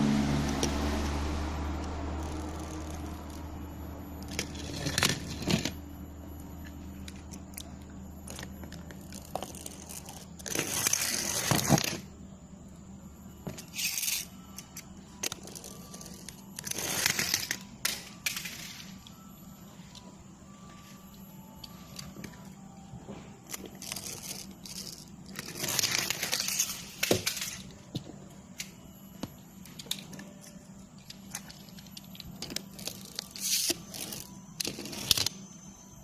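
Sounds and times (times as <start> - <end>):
scraping and crunching: 23.2 - 27.8.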